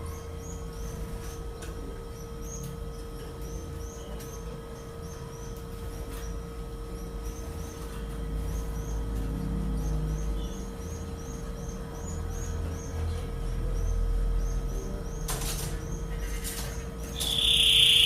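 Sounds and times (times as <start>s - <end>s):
steady low hum: 0.0s - 18.0s
canary chirping: 2.1s - 16.3s, 17.1s - 18.0s.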